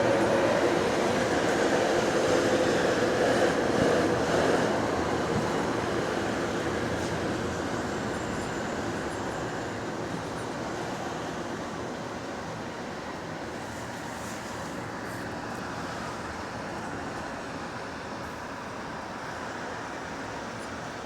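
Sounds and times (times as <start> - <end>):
bus engine and road noise: 0.0 - 21.0.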